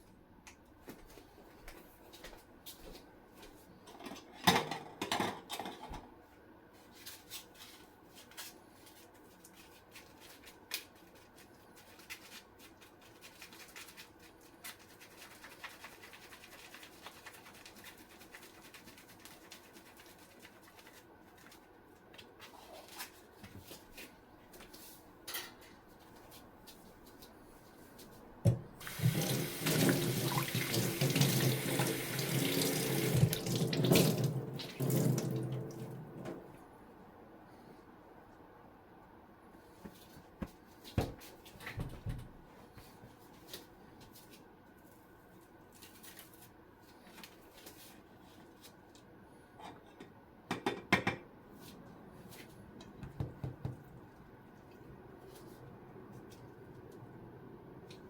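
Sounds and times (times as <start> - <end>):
kitchen clicks and knocks: 3.9 - 6.1, 49.6 - 51.3
tap water running into sink: 28.8 - 36.4.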